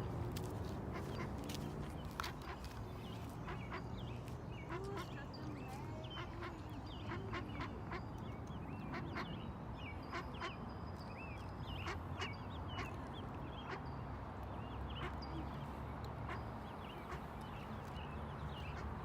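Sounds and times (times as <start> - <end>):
ducks quacking: 0.9 - 8.1, 8.8 - 9.4, 16.2 - 17.4
ducklings peeping: 0.9 - 9.4.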